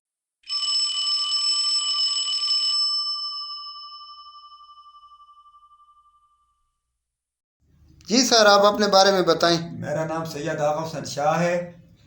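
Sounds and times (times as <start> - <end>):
bell ringing with rapid trill: 0.4 - 6.7.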